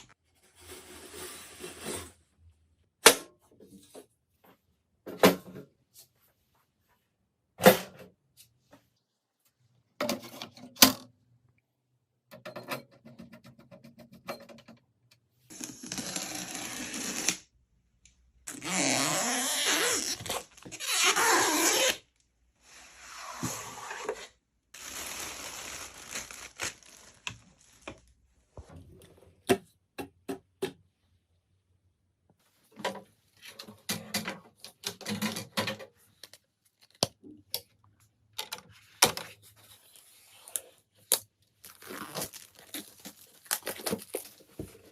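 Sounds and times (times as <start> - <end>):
packaging rustling: 41.6 - 44.9.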